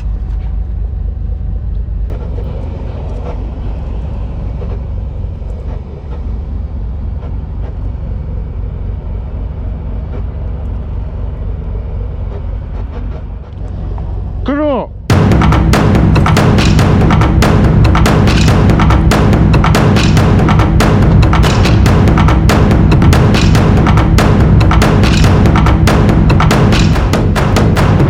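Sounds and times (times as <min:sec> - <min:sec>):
boat engine droning: 0:00.0 - 0:28.0.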